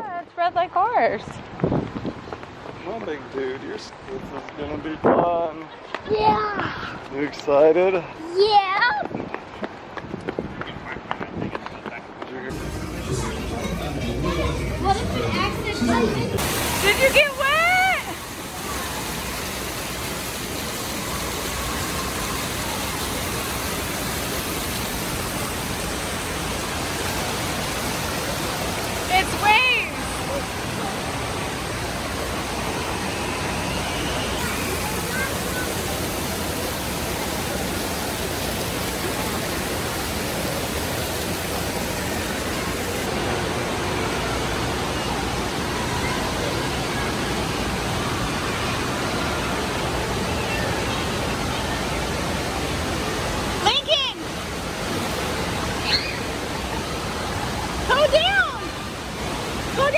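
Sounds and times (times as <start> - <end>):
faint voices: 12.5 - 59.9
water rushing and splashing: 12.5 - 59.9.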